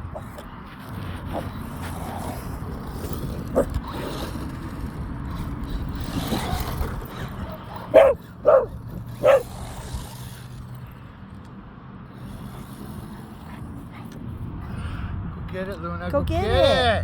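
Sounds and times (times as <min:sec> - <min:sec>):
toy car motor humming: 0:01.3 - 0:11.0, 0:12.1 - 0:13.9
dog barking: 0:07.9 - 0:09.5.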